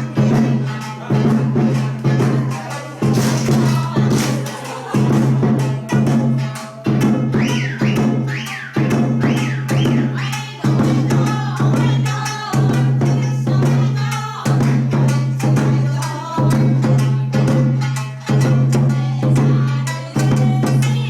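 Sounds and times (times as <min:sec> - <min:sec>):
folk dance music: 0:00.0 - 0:14.5
steady drum beat: 0:00.0 - 0:21.0.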